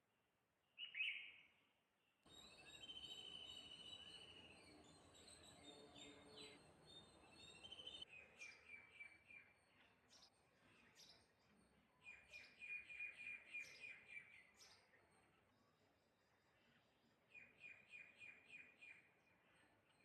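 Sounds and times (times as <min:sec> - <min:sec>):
birds chirping and calling: 0:02.3 - 0:11.1.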